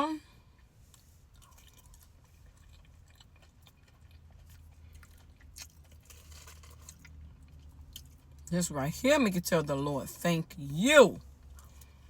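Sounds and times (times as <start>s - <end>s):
chewing and biting food: 0.6s - 8.5s, 11.3s - 12.0s.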